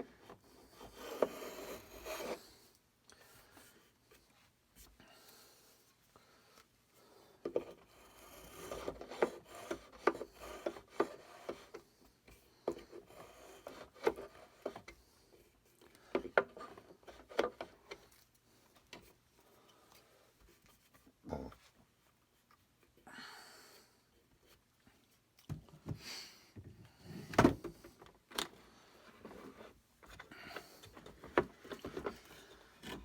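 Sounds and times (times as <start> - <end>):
hand tool scraping wood: 0.6 - 2.7, 7.5 - 15.1.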